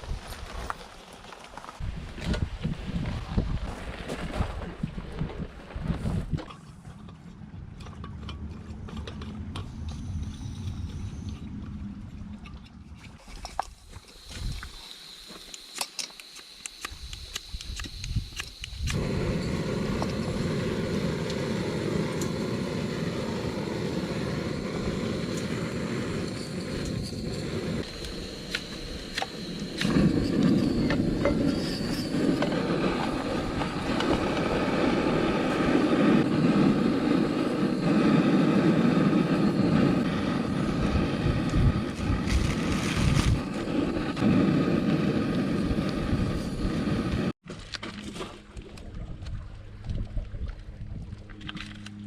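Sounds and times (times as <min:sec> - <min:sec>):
wind rush on microphone: 0:01.8 - 0:06.6, 0:16.9 - 0:47.4.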